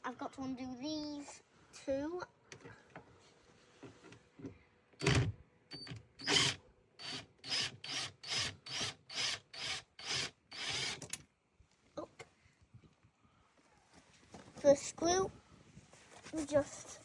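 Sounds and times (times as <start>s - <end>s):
drill short bursts: 5.0s - 11.0s.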